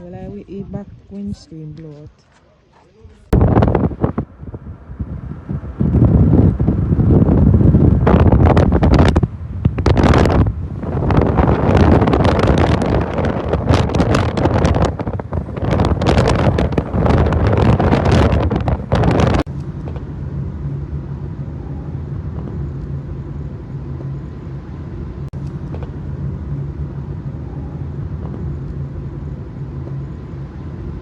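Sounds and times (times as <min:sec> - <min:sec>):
low mechanical hum: 0:00.0 - 0:31.0
wind gusting against microphone: 0:02.9 - 0:31.0.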